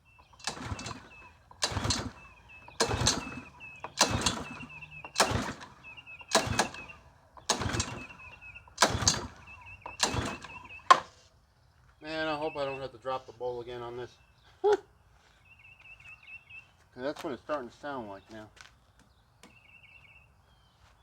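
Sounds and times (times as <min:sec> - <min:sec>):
lawn mower recoil starter pulled: 0:00.0 - 0:11.4.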